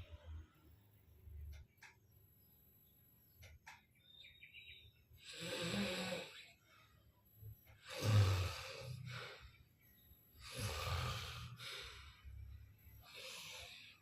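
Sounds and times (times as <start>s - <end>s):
person snoring: 5.3s - 6.4s, 7.8s - 9.3s, 10.4s - 11.9s.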